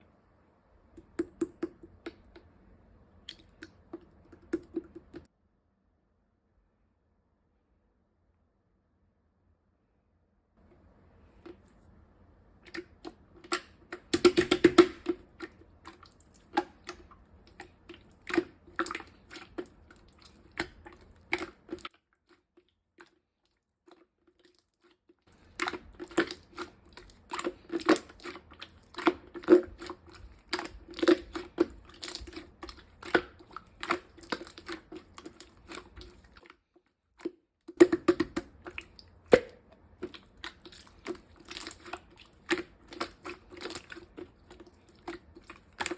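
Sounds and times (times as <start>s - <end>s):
slime squished by hand: 25.4s - 36.5s, 37.8s - 45.9s.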